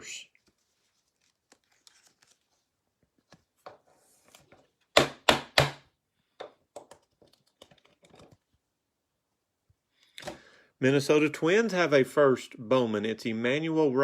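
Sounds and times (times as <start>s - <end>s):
cards clicking and rustling: 0.4s - 4.8s, 6.6s - 8.5s.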